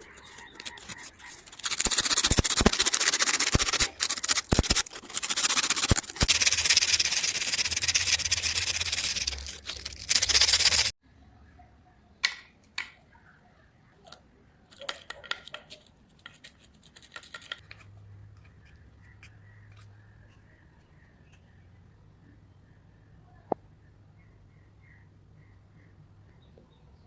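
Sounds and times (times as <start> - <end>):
scraping against hard surface: 0.0 - 10.9.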